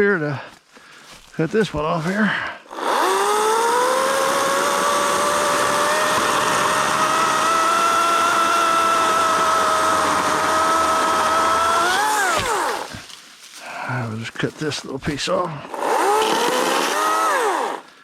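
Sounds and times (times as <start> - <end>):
electric chainsaw cutting branch: 2.7 - 13.2, 15.6 - 18.0.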